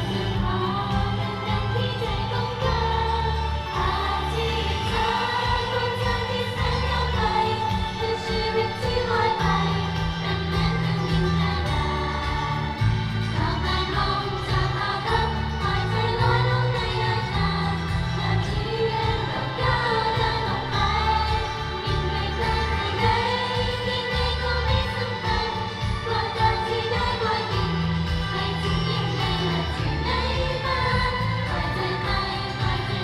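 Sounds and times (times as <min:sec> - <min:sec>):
steady bass line: 0:00.0 - 0:33.0
women singing pop song: 0:00.0 - 0:33.0.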